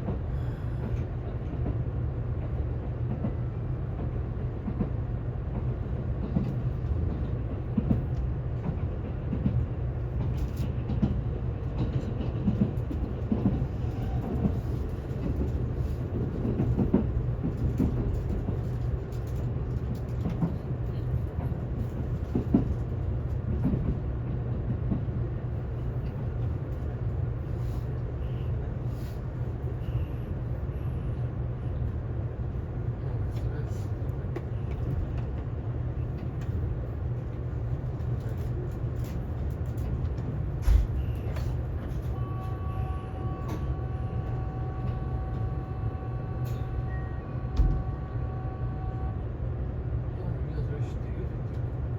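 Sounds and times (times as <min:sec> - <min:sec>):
train cabin low rumble: 0:00.0 - 0:51.9.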